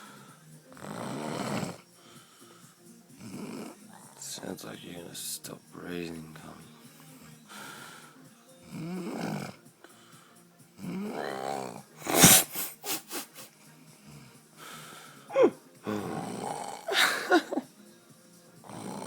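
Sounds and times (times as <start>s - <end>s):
man snoring heavily: 0.0s - 4.5s, 7.3s - 12.8s, 14.0s - 17.6s, 18.6s - 19.0s
loud sharp snort: 0.7s - 2.4s, 3.1s - 4.3s, 8.6s - 9.6s, 10.8s - 17.4s, 18.6s - 19.0s.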